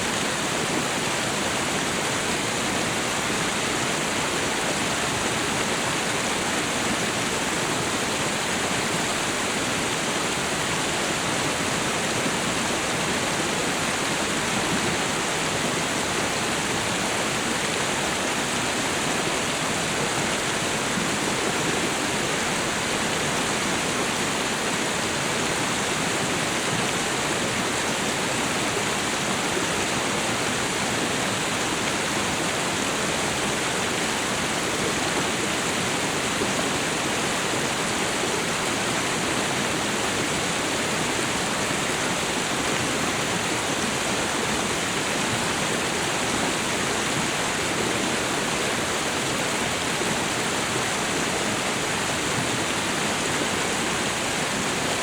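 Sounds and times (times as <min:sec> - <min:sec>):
waterfall and river rushing: 0:00.0 - 0:55.0.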